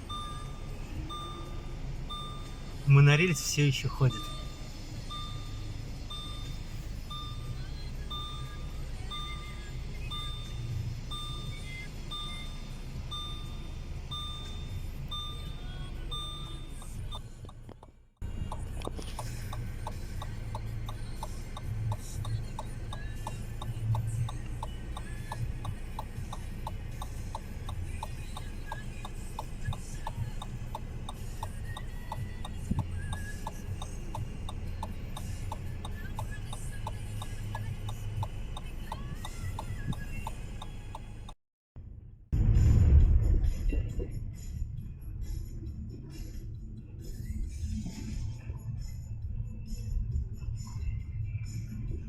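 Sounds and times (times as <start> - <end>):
two-note electronic warning beep: 0.0 - 17.3
turn signal ticking: 0.0 - 41.4
engine and tyre hum: 0.0 - 52.0.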